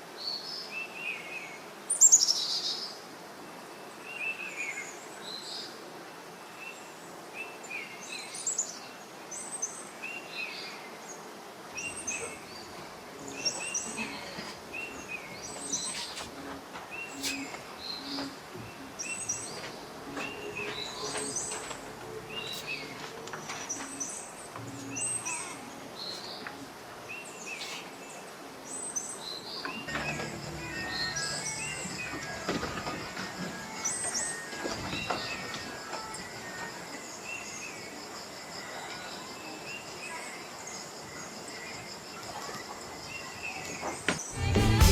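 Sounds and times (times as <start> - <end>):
outdoor background noise: 0.0 - 44.9
small birds chirping: 6.6 - 44.3.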